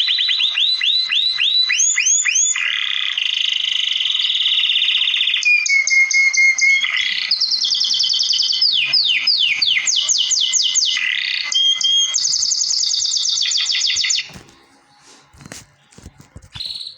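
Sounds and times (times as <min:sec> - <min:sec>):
canary singing: 0:00.0 - 0:16.9.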